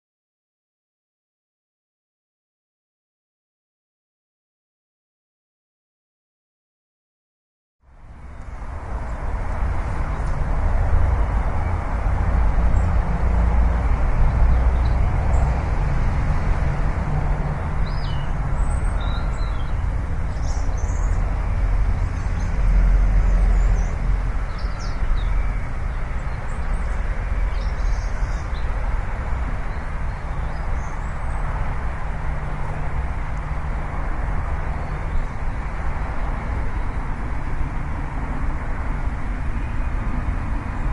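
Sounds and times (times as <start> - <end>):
bird chirps: 17.8 - 21.2.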